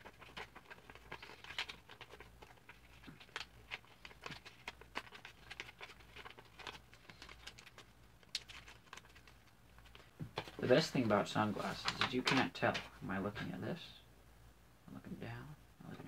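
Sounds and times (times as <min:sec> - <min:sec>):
paper crinkling: 0:00.0 - 0:12.8.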